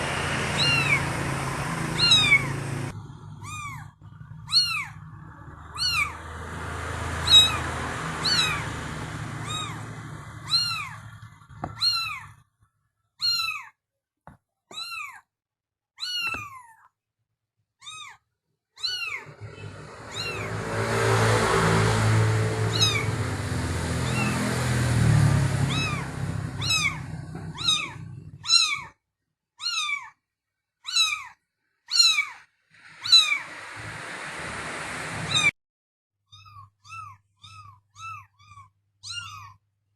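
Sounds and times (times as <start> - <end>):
low rumbling noise: 0.0 - 11.9, 19.2 - 28.5, 32.8 - 35.5
kitten mewing: 2.0 - 2.6, 5.8 - 6.2, 9.4 - 11.1, 11.7 - 12.4, 18.8 - 20.5, 22.7 - 23.1, 24.0 - 24.4, 25.7 - 29.0, 29.6 - 30.2.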